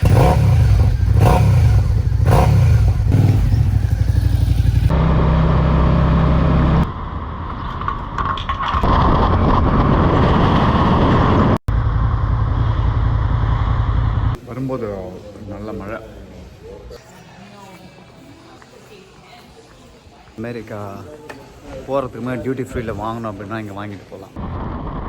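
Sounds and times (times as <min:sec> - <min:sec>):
motorcycle engine running: 0:00.0 - 0:06.9, 0:11.7 - 0:14.4.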